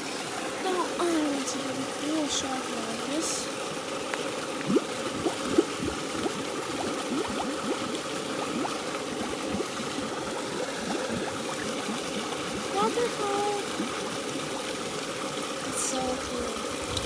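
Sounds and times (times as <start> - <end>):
fountain water trickling and gurgling: 0.0 - 17.0
water plops: 4.0 - 17.0.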